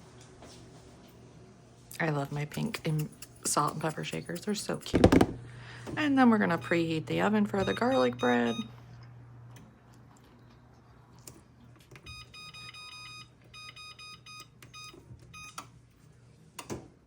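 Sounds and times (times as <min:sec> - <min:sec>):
faint steady hum: 0:00.0 - 0:16.8
short control panel beeps: 0:07.6 - 0:08.7.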